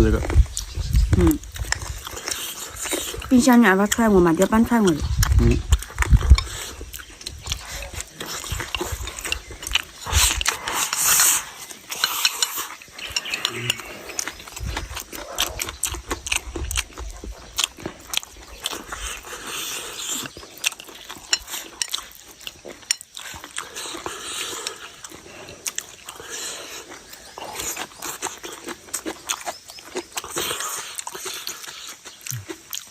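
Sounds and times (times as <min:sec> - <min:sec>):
chewing and smacking: 0:00.0 - 0:32.9
utensils clicking against a bowl: 0:08.2 - 0:14.4.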